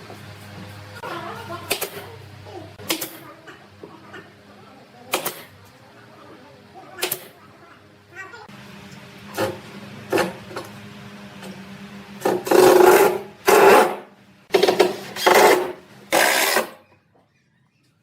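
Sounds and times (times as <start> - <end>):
hand tool rasping on wood: 12.5 - 14.0.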